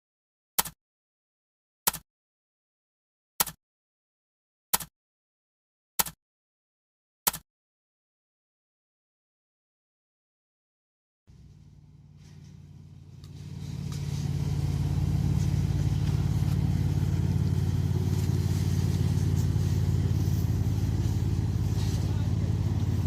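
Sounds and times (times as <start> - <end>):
vehicle engine running: 11.3 - 23.0.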